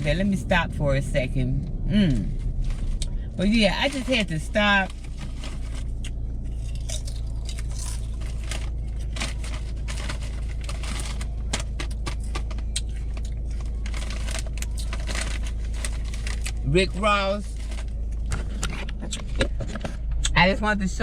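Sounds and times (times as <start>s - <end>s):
low hum of car: 0.0s - 21.0s
chip bag crinkling: 2.8s - 18.1s.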